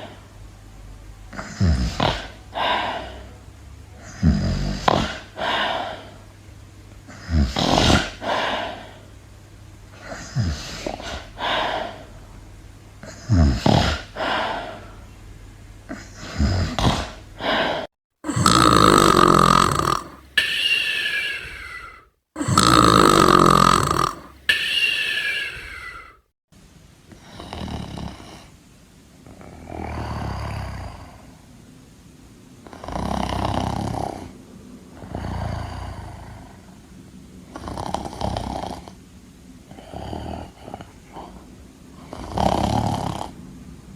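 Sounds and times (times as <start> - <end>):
snoring: 1.3 - 3.3, 4.0 - 6.1, 7.1 - 9.0, 10.0 - 12.0, 13.0 - 14.8, 15.9 - 26.2, 27.1 - 28.5, 29.3 - 31.4, 32.6 - 34.4, 35.0 - 36.8, 37.5 - 39.0, 39.7 - 41.4, 42.0 - 43.4.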